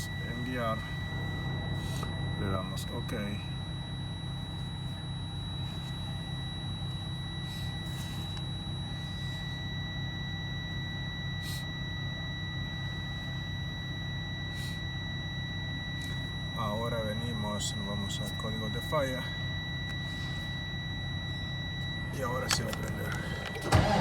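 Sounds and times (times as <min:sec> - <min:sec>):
high-pitched electronic tone: 0:00.0 - 0:07.6
low hum: 0:00.0 - 0:24.0.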